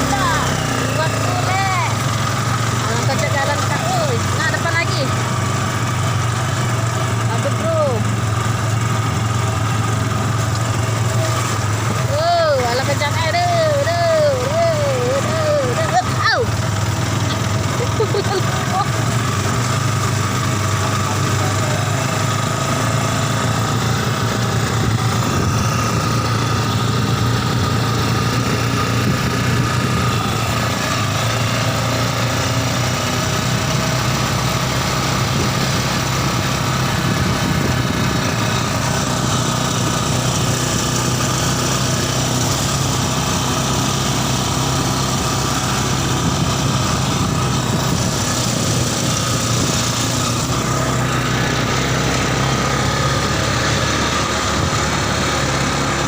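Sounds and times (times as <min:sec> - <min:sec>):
motorcycle engine running steadily: 0:00.0 - 0:56.0.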